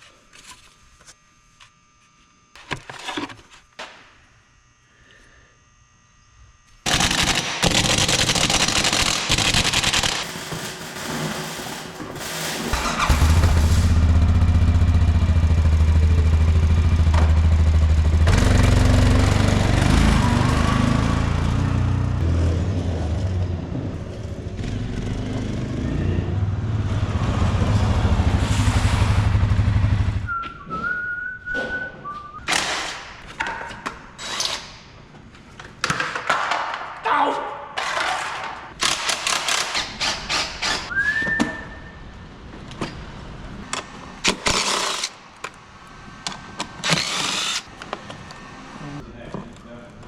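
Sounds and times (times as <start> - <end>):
atv engine running: 12.7 - 30.3.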